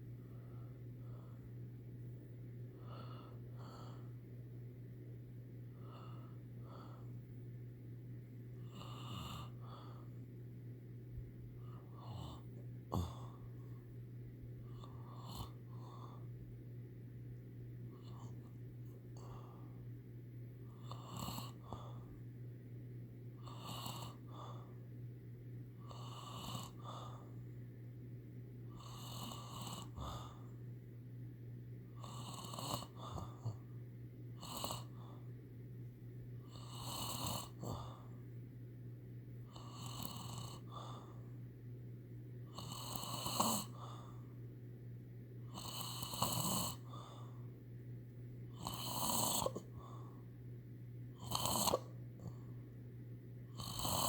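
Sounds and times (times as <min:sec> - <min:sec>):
faint low hum: 0:00.0 - 0:54.0
person snoring: 0:08.6 - 0:10.0, 0:11.8 - 0:13.4, 0:14.7 - 0:16.2, 0:20.7 - 0:22.0, 0:23.4 - 0:24.6, 0:25.9 - 0:27.1, 0:28.7 - 0:30.4, 0:32.0 - 0:33.6, 0:34.4 - 0:35.1, 0:36.4 - 0:38.0, 0:39.5 - 0:41.1, 0:42.5 - 0:44.0, 0:45.5 - 0:47.2, 0:48.5 - 0:50.1, 0:51.2 - 0:52.4, 0:53.5 - 0:54.0.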